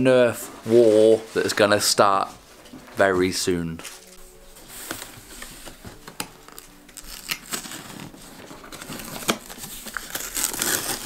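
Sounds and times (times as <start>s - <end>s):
packaging crinkling and tearing: 4.9s - 11.0s.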